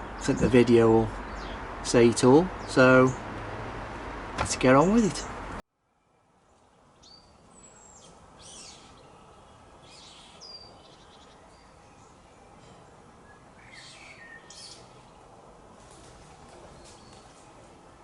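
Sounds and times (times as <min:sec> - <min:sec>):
faint outdoor background hiss: 0:00.0 - 0:18.0.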